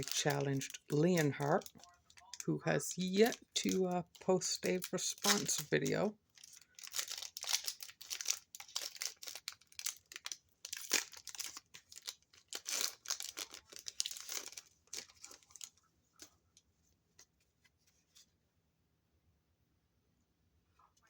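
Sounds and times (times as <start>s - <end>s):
foil wrapper crinkling and tearing: 0.0s - 16.3s.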